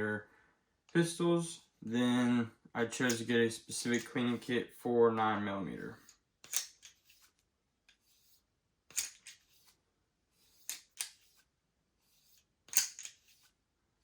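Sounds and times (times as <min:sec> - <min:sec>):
brush scraping through gun barrel: 0:05.9 - 0:09.8.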